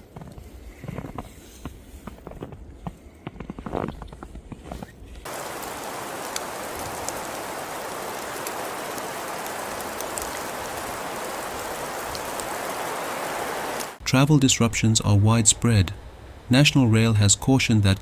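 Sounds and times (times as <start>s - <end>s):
rain falling: 5.3s - 14.0s.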